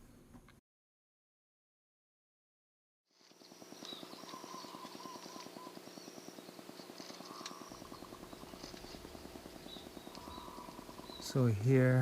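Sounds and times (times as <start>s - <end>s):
thin high calls and chirps: 3.2s - 12.0s
fast even pulsing: 3.4s - 12.0s.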